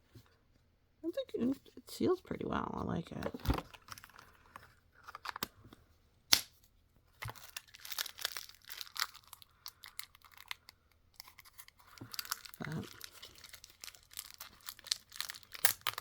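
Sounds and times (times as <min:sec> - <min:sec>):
plastic packaging crinkling: 0:03.2 - 0:05.6, 0:07.2 - 0:16.0.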